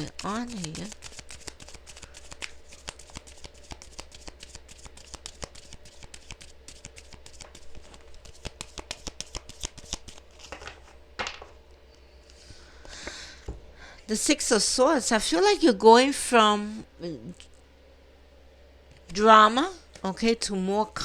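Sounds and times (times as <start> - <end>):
cards being shuffled: 0.0 - 11.6
low steady hum: 0.0 - 21.0.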